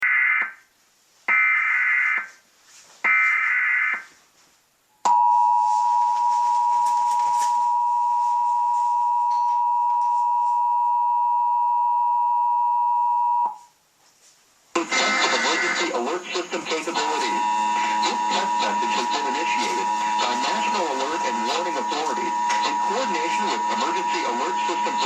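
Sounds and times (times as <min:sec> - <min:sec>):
data bursts: 0:14.8 - 0:25.0.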